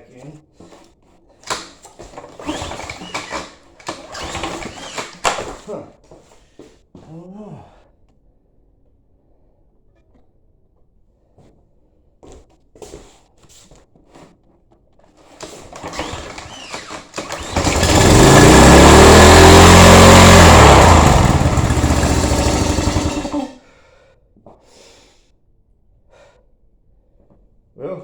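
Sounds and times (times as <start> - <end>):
small gasoline engine running: 2.4 - 3.3, 3.9 - 5.1, 15.8 - 23.6
engine cranking: 2.4 - 5.4, 15.8 - 23.5.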